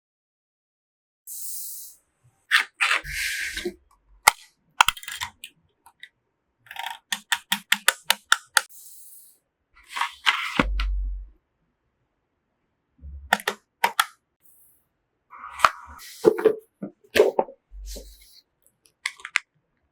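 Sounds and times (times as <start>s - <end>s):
plastic and metal clicks and snaps: 4.2s - 6.1s, 6.7s - 8.7s, 13.3s - 14.2s.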